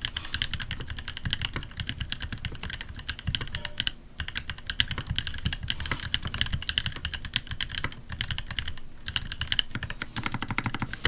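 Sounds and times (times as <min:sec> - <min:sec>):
fast mechanical keyboard typing: 0:00.0 - 0:11.0.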